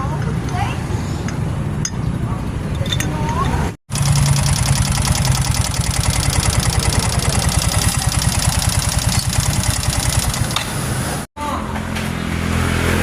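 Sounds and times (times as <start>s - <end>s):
motorcycle engine idling: 3.9s - 10.7s.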